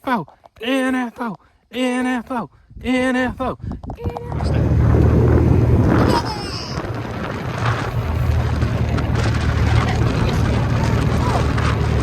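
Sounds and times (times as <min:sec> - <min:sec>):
wind buffeting microphone: 0:02.6 - 0:12.0
steady low rumble: 0:02.7 - 0:12.0.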